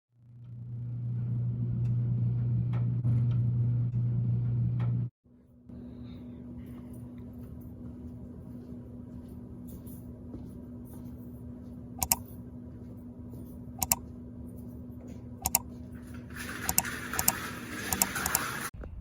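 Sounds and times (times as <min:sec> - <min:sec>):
steady low hum: 0:00.2 - 0:17.0
quick clicks: 0:12.0 - 0:12.2, 0:13.8 - 0:14.0
sharp double clicks: 0:13.8 - 0:14.0.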